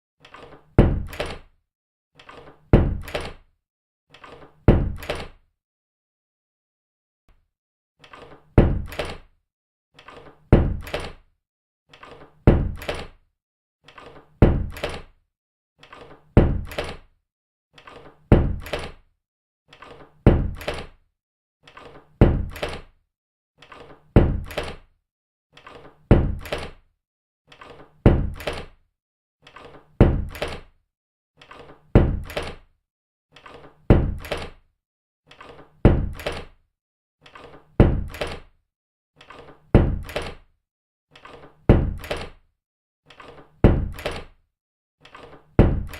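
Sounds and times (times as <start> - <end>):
door closing with thud: 0.4 - 1.4.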